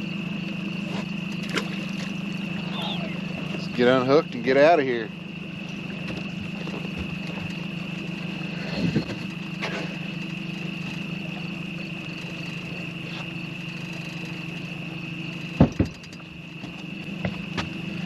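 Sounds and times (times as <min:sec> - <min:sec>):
boat motor idling: 0:00.0 - 0:18.0
sharp knocks: 0:15.6 - 0:16.0.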